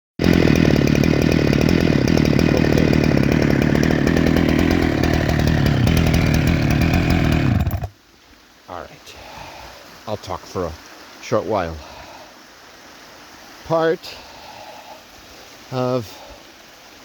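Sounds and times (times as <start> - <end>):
chainsaw running: 0.2 - 7.9.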